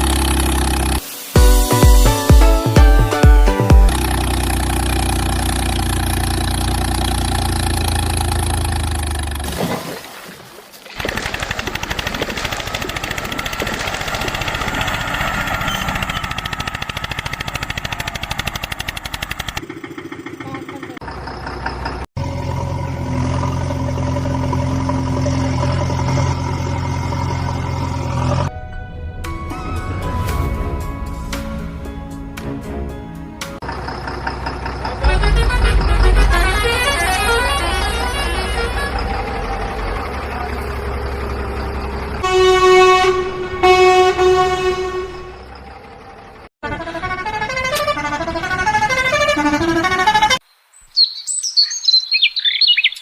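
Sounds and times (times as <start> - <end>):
engine idling: 0.0 - 9.4, 11.0 - 28.4, 31.7 - 50.2
vehicle horn blasts: 35.0 - 39.3, 42.2 - 45.6, 46.6 - 50.4.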